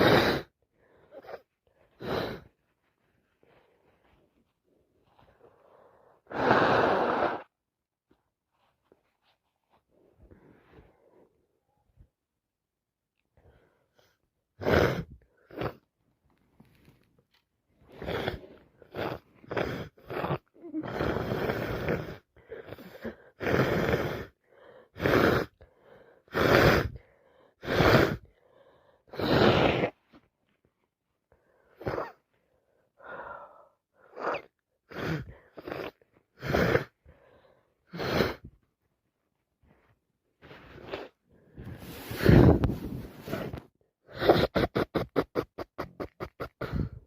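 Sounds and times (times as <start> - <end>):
woman blowing her nose: 0.0 - 2.5, 6.3 - 7.5, 14.6 - 15.8, 17.9 - 24.4, 25.0 - 25.6, 26.3 - 27.0, 27.6 - 28.3, 29.1 - 30.1, 31.8 - 32.2, 34.0 - 37.0, 37.9 - 38.5, 40.4 - 47.0.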